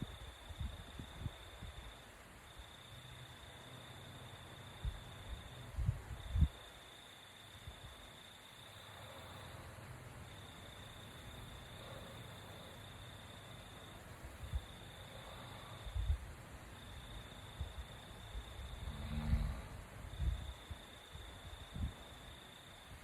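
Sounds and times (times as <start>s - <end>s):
crickets trilling: 0.0s - 23.0s
faint breathing of sleeper: 8.6s - 19.9s.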